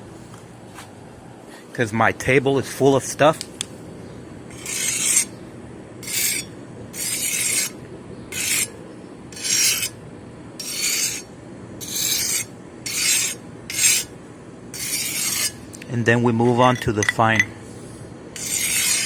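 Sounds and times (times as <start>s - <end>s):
knife scraping on whetstone: 4.5s - 5.3s, 6.0s - 10.0s, 10.6s - 14.1s, 14.8s - 15.6s, 18.4s - 19.0s.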